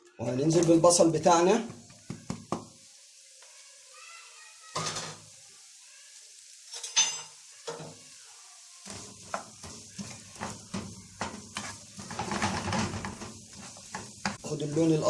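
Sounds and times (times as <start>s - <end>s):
onions sizzling in oil: 0.0s - 15.0s
spoon knocking and scraping pan: 1.6s - 2.8s, 6.7s - 8.0s, 8.8s - 15.0s.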